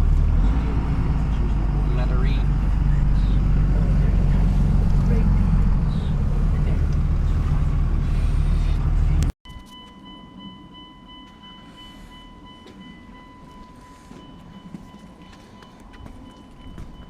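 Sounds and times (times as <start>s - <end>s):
diesel engine running: 0.0s - 9.4s
faint high-pitched tone: 9.5s - 15.7s.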